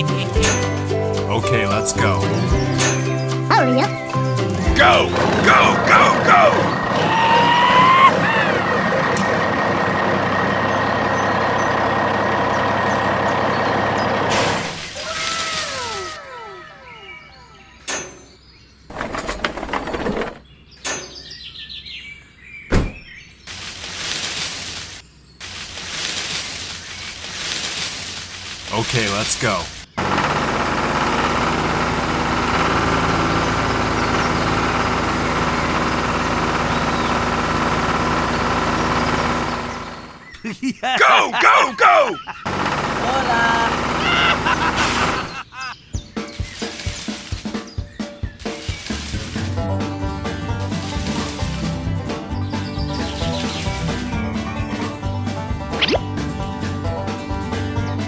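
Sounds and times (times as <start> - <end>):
heavy truck engine running: 0.0 - 14.8, 28.8 - 40.3, 41.9 - 45.5, 48.9 - 58.0
falling whistling tones: 14.8 - 18.2.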